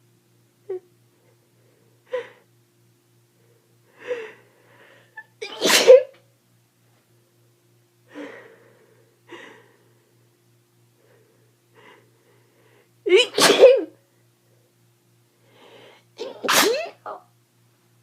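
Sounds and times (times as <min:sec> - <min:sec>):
person sneezing loudly: 0:05.4 - 0:06.2, 0:13.1 - 0:14.0, 0:16.2 - 0:17.2.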